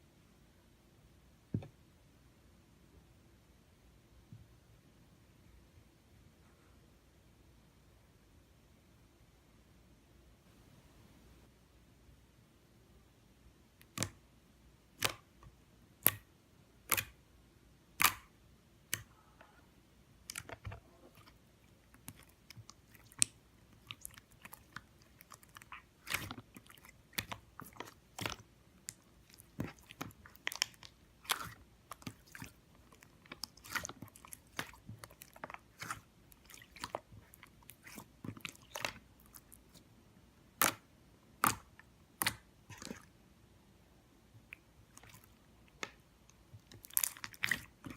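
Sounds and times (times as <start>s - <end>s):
slime popping and crackling: 18.0s - 18.3s, 20.2s - 39.7s, 46.6s - 47.9s.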